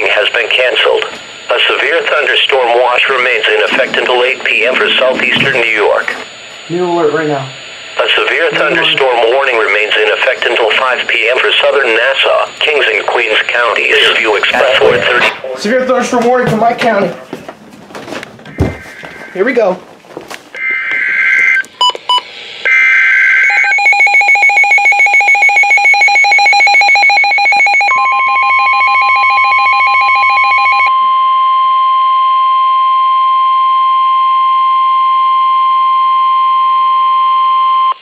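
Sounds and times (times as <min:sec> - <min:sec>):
steady warning alarm tone: 0:00.0 - 0:16.0, 0:18.4 - 0:19.7, 0:20.6 - 0:38.0
warbling data header bursts: 0:01.4 - 0:15.4
rapid pulsing alarm beep: 0:01.5 - 0:06.1, 0:07.7 - 0:15.3, 0:20.6 - 0:31.7.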